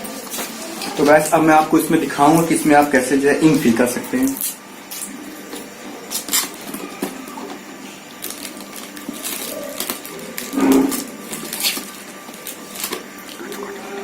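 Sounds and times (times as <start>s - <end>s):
plastic parts clicking and rustling: 8.2s - 13.0s.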